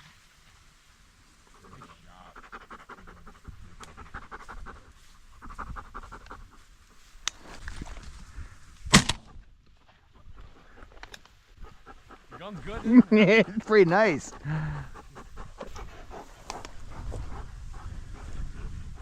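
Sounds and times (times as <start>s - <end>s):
dog panting: 1.5s - 7.1s, 10.1s - 19.0s.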